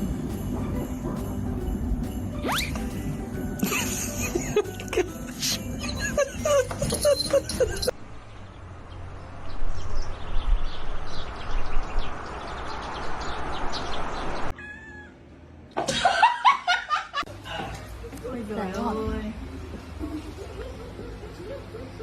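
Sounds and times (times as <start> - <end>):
cat meowing: 14.6 - 15.2.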